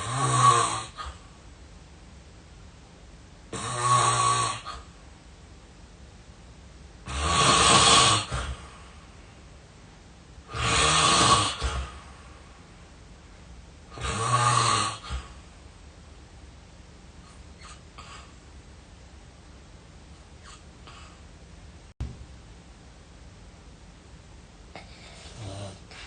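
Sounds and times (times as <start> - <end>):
person snoring heavily: 0.0 - 1.2, 3.5 - 4.9, 7.0 - 8.7, 10.5 - 12.1, 13.9 - 15.4, 24.9 - 26.0.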